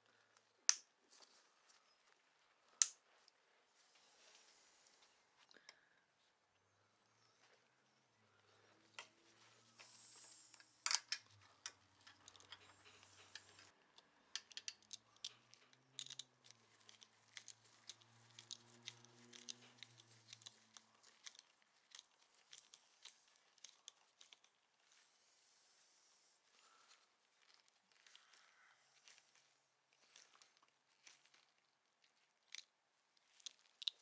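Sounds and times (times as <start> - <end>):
clicks snips and rustles: 10.6 - 25.0, 26.8 - 34.0.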